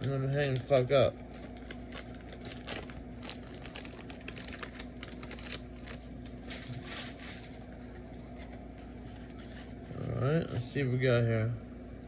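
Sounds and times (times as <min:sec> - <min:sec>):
cards and wrapper rustling: 0:00.0 - 0:09.6.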